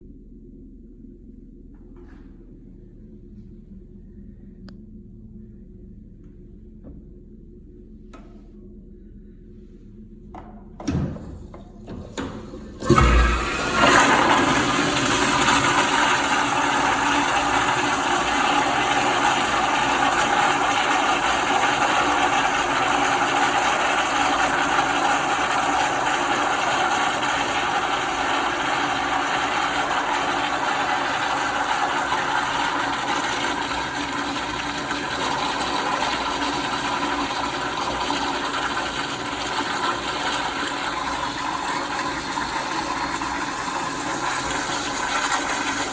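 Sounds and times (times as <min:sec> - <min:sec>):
toilet flushing: 0:10.8 - 0:45.9.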